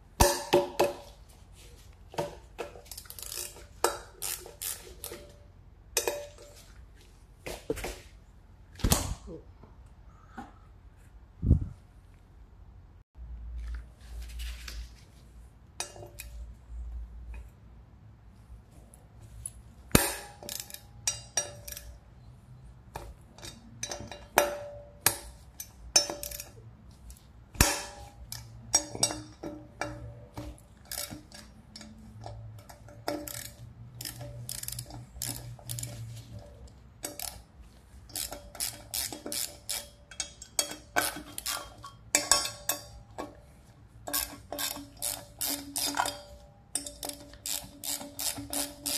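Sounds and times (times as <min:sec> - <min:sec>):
sharp ringing metal knocks: 0:27.6 - 0:31.1, 0:40.0 - 0:43.5.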